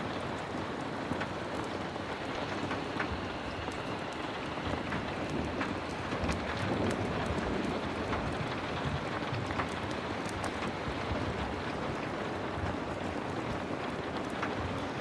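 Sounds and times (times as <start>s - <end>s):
sharp ticks of raindrops: 0.0s - 15.0s.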